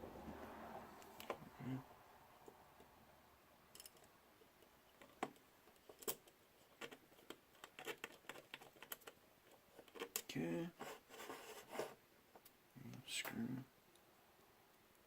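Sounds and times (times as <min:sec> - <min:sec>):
small parts clicking and tapping: 0:03.7 - 0:10.3.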